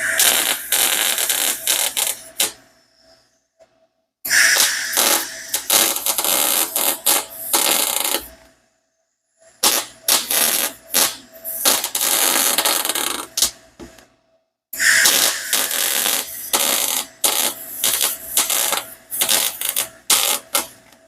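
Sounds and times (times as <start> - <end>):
welder arc crackling: 0.0 - 2.6, 4.3 - 8.3, 9.6 - 13.5, 14.9 - 20.7.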